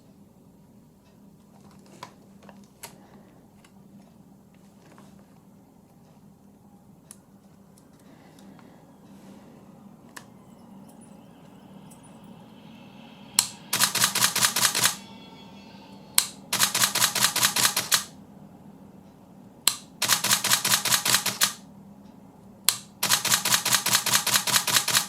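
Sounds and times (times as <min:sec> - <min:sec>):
camera shutter clicking in bursts: 0:13.7 - 0:15.0, 0:16.6 - 0:18.1, 0:19.7 - 0:21.6, 0:22.7 - 0:25.0.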